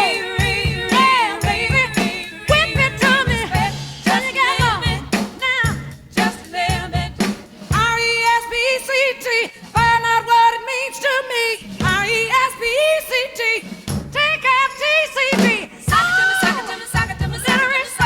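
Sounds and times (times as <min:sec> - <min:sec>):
pop song with singing: 0:00.0 - 0:18.0.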